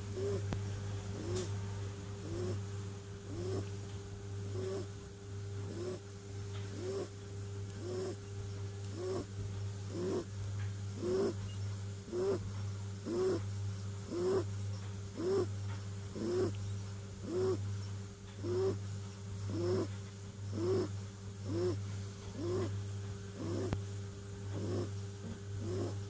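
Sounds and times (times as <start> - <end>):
kitten snoring: 0.0 - 1.5, 2.2 - 2.6, 3.3 - 3.7, 4.5 - 5.0, 5.6 - 6.1, 6.7 - 7.2, 7.8 - 8.2, 8.9 - 9.3, 9.9 - 10.3, 11.0 - 11.4, 12.1 - 13.5, 14.1 - 14.5, 15.1 - 15.5, 16.1 - 16.6, 17.2 - 17.7, 18.4 - 18.8, 19.5 - 22.8, 23.4 - 23.8, 24.5 - 26.0
steady low hum: 0.0 - 26.0.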